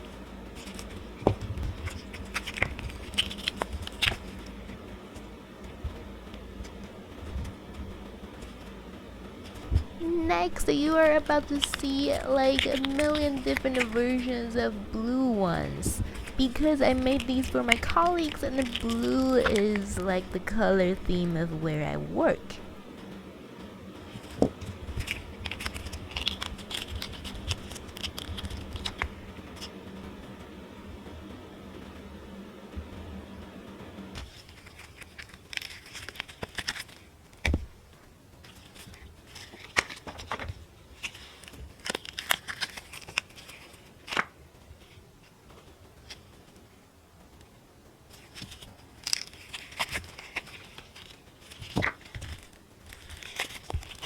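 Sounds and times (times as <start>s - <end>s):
silicone mold crackling: 0.0s - 31.1s, 34.1s - 54.0s
resin pieces popping free: 24.2s - 29.7s.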